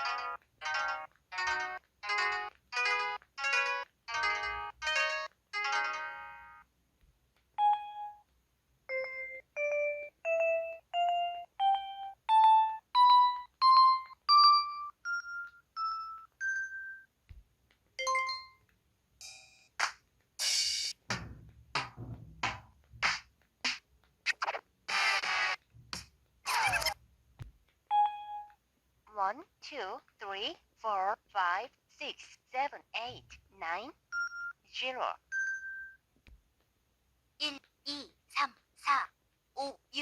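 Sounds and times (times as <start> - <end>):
phone chime: 7.6 - 8.2, 8.9 - 17.1, 27.9 - 28.5, 34.1 - 34.6, 35.3 - 36.0.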